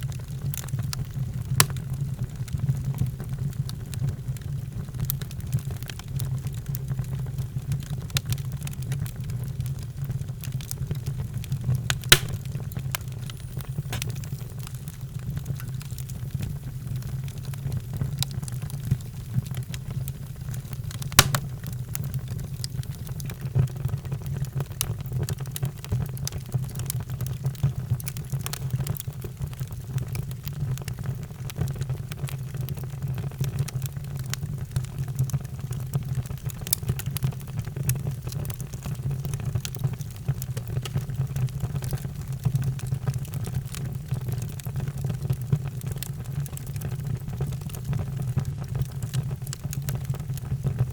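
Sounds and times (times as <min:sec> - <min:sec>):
fire crackling: 0:00.0 - 0:50.9
loud fire pops: 0:01.3 - 0:02.0, 0:10.4 - 0:23.8.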